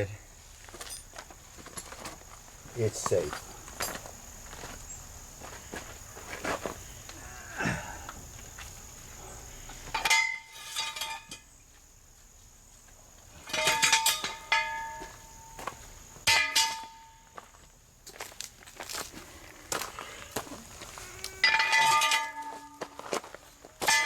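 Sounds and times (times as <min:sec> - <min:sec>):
metal tools clanking with ring: 0:09.9 - 0:11.6, 0:13.4 - 0:15.7, 0:16.3 - 0:17.3, 0:21.4 - 0:22.8.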